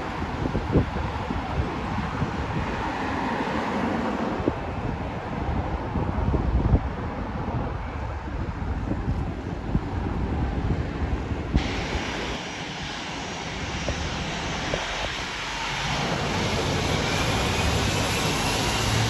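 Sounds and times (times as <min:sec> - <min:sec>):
aircraft engines rushing: 0:00.0 - 0:19.0
wind buffeting microphone: 0:00.0 - 0:19.0
faint rising whine: 0:11.6 - 0:19.0.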